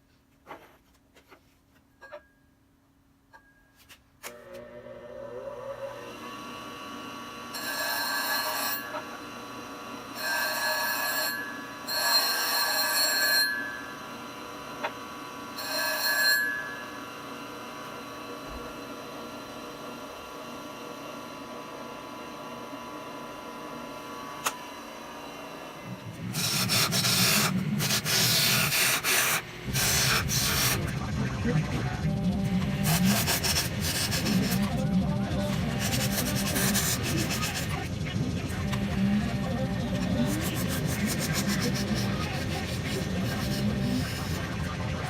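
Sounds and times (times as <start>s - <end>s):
bench grinder running: 4.4s - 45.0s
tool scraping on grinding wheel: 7.6s - 9.1s, 26.3s - 30.9s, 32.8s - 34.8s, 35.6s - 37.9s, 39.9s - 44.6s.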